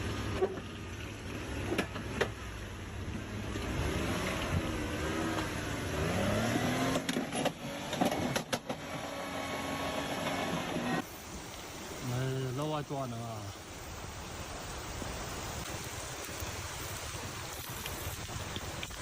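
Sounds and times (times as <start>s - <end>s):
sharp clicks and knocks: 7.0s - 8.8s.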